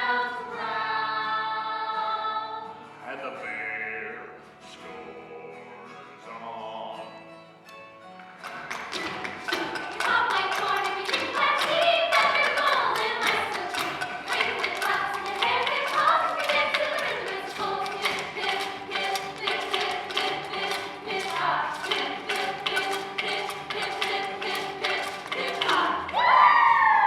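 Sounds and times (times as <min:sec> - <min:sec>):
voices singing: 0:00.0 - 0:04.0, 0:09.0 - 0:27.0
tapping percussion beat: 0:08.2 - 0:26.4.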